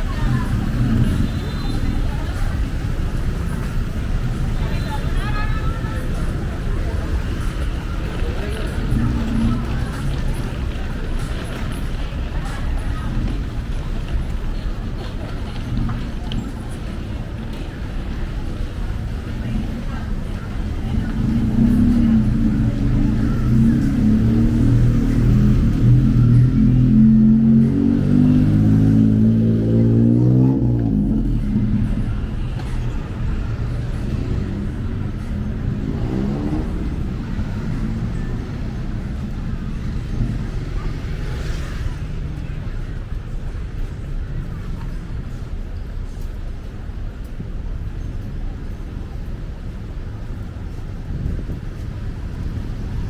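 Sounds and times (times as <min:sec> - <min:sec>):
passing street traffic: 0:00.0 - 0:53.0
vehicle engine pulling away: 0:18.6 - 0:43.0
wind buffeting microphone: 0:46.9 - 0:53.0.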